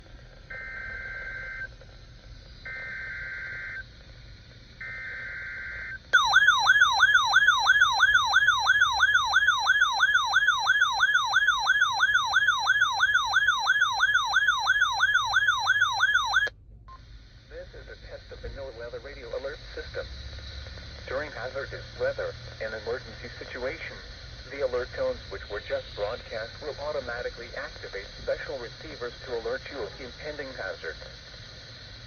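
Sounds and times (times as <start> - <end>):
two-tone digital data warble: 4.8 - 12.6
warbling electronic alert tone: 6.2 - 16.5.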